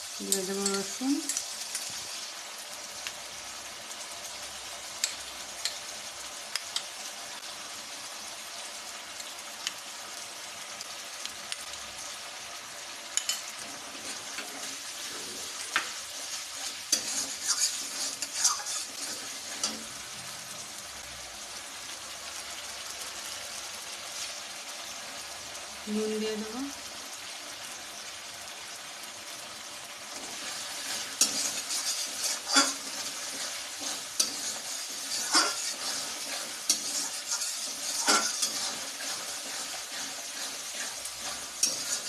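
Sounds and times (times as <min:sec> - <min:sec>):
paste sizzling in hot oil: 0:00.0 - 0:42.0
spatula stirring and clicking on pan: 0:00.1 - 0:02.3, 0:04.9 - 0:05.9, 0:06.5 - 0:07.1, 0:13.1 - 0:20.1, 0:30.1 - 0:42.0.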